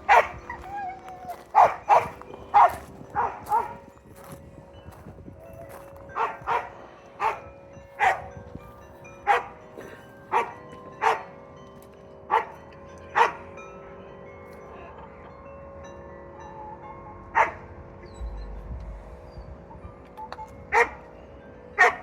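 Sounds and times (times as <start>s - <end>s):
dog barking: 0.0s - 3.8s, 6.2s - 8.3s, 9.3s - 9.5s, 10.3s - 11.3s, 12.3s - 12.6s, 13.2s - 13.4s, 17.4s - 17.6s, 20.7s - 21.0s, 21.8s - 22.0s.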